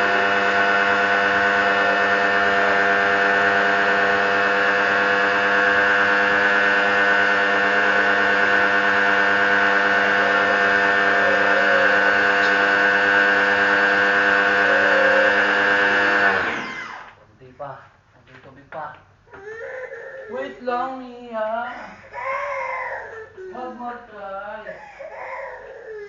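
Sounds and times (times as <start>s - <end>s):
pressure washer motor humming: 0.0s - 17.2s.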